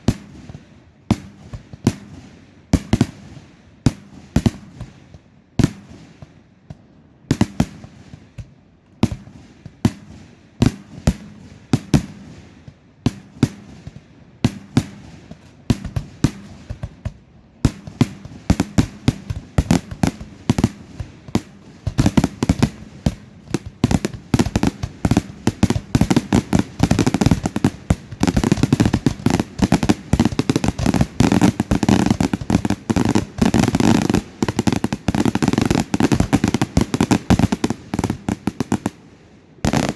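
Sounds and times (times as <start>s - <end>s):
fireworks bursting: 0.0s - 39.9s.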